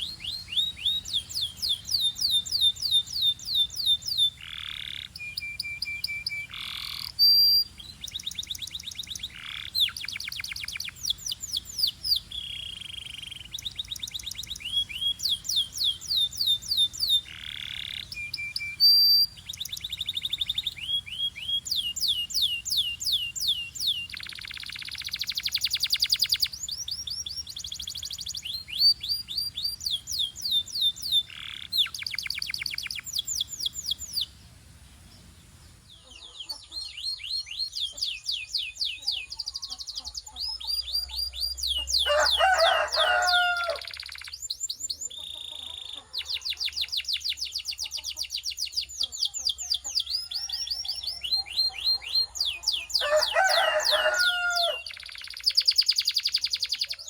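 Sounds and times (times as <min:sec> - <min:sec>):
lower-pitched bird call: 0:00.0 - 0:35.3, 0:36.0 - 0:57.0
canaries trilling: 0:00.0 - 0:57.0.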